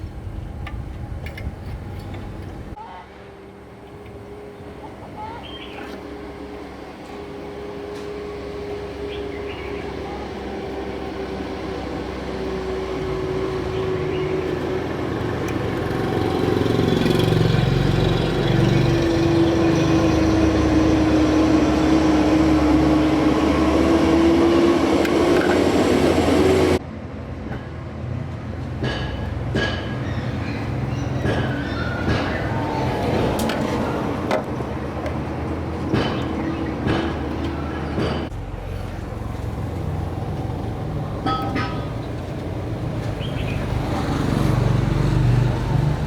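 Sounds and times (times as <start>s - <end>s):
machine humming and rumbling: 0.0s - 2.8s.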